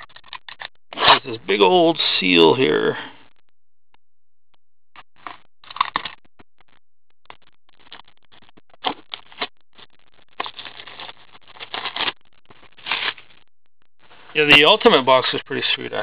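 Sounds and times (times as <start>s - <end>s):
packaging crinkling and tearing: 5.6s - 6.2s, 8.8s - 13.2s.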